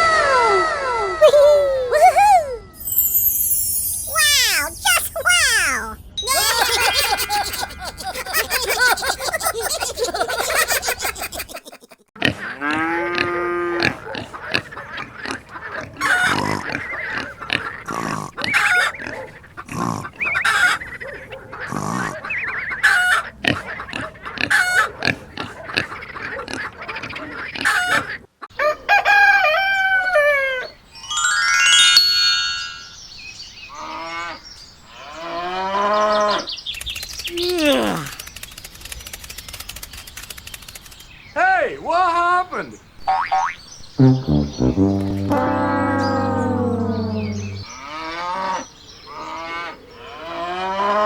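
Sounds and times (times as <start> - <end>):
background music: 44.0 - 47.7
animal calls: 45.3 - 47.9.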